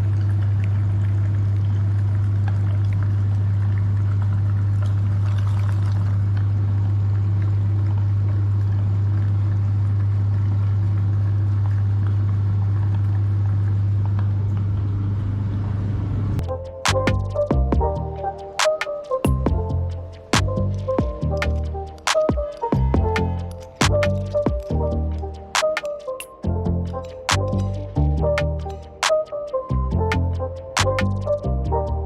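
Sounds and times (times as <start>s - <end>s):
wet churning noise: 0.0s - 31.4s
electronic music: 16.4s - 32.0s.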